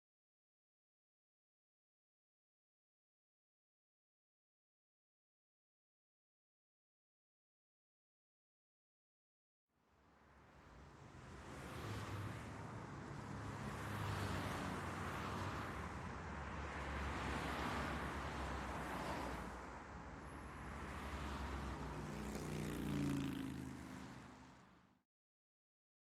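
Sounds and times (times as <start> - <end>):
vehicles passing: 10.1 - 24.9.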